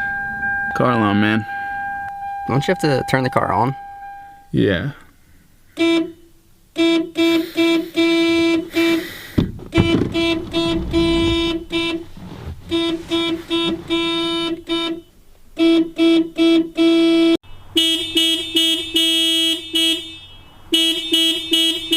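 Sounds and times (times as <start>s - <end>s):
car alarm horn honks: 15.6s - 21.9s.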